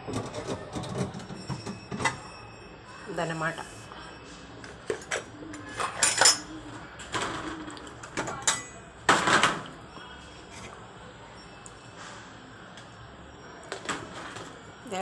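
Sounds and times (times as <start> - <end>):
dishes and utensils clattering: 4.7 - 9.7.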